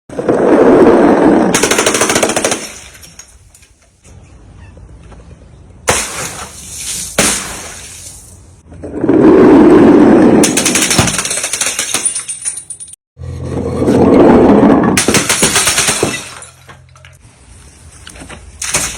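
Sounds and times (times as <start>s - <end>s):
sharp bangs: 5.8s - 8.1s, 14.8s - 16.7s.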